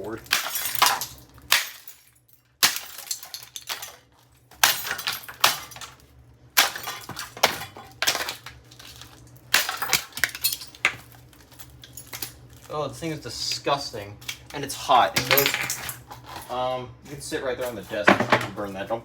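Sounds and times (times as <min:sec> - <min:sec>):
coffee maker being smashed: 0:00.0 - 0:06.0, 0:06.6 - 0:11.3, 0:15.0 - 0:16.1, 0:17.9 - 0:18.7
plastic and glass pieces rattling: 0:00.0 - 0:06.0, 0:06.6 - 0:12.7, 0:15.1 - 0:16.6.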